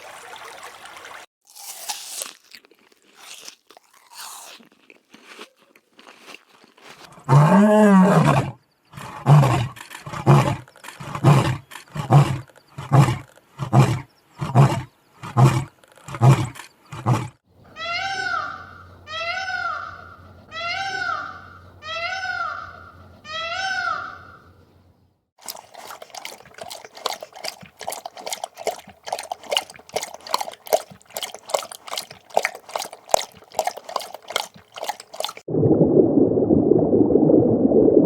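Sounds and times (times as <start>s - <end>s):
lion roaring: 7.2s - 17.4s.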